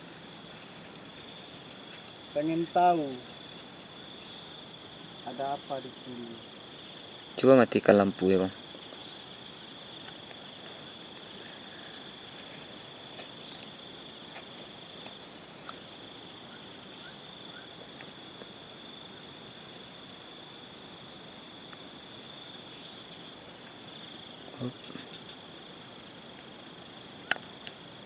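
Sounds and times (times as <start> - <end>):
crickets trilling: 0.0 - 28.0.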